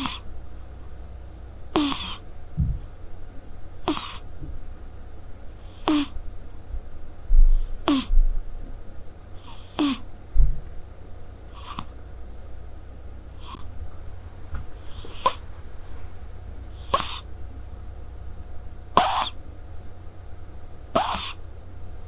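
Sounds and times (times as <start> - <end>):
cat snoring: 0.0 - 0.2, 1.7 - 2.2, 3.8 - 4.2, 5.6 - 6.2, 7.5 - 8.1, 9.4 - 10.1, 11.5 - 11.9, 13.4 - 13.7, 14.8 - 15.5, 16.7 - 17.3, 19.0 - 19.4, 20.9 - 21.4
low thumps: 2.5 - 3.0.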